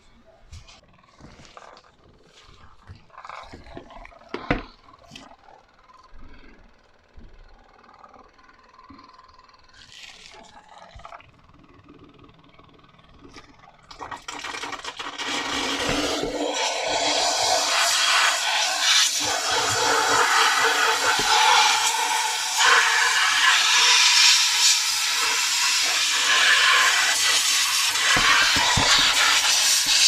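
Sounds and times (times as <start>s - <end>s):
steam cleaner jet hissing: 14.9s - 30.0s.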